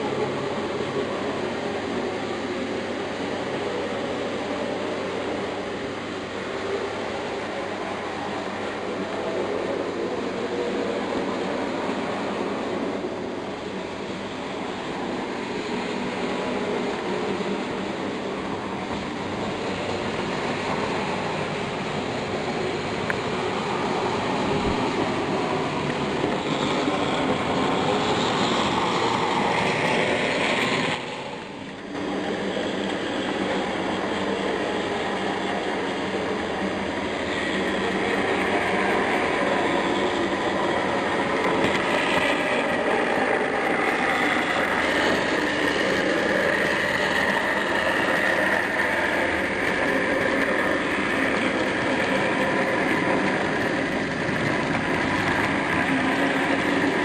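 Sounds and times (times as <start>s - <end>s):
model trains running on track: 0.0s - 57.0s.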